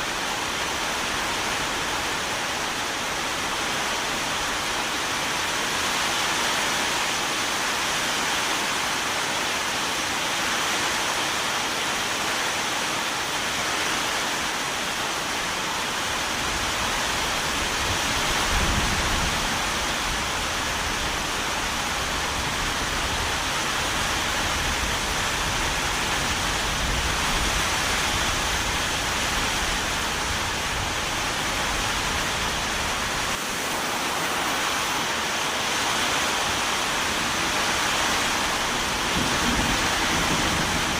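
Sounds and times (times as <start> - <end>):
heavy rain hissing: 0.0 - 40.9.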